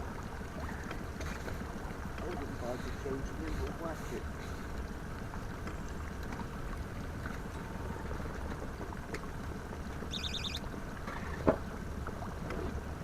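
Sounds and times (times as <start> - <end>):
water noise: 0.0 - 13.0.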